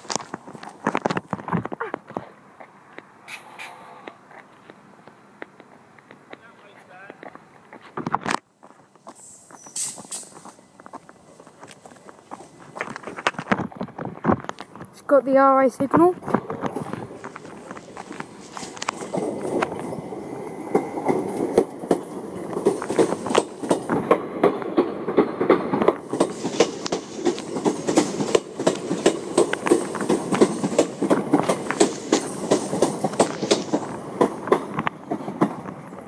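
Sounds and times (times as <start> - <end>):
train rumble: 0.0 - 36.0
train wheels clattering: 15.9 - 36.0.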